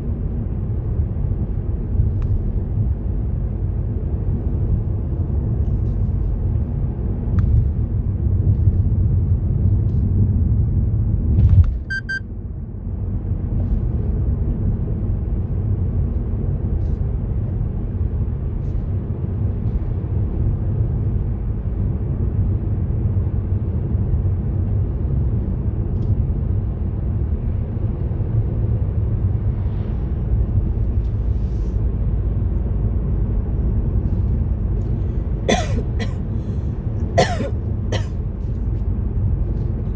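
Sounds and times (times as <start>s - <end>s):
car engine and tyres rumbling: 0.0s - 39.9s
quick beeps: 11.9s - 12.2s.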